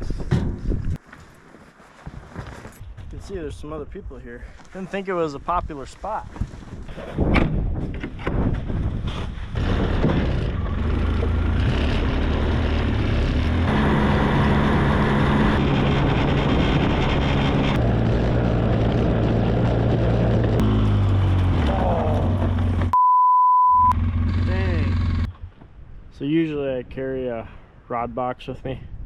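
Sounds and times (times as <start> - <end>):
vehicle engine running: 9.6 - 23.0, 23.9 - 25.4.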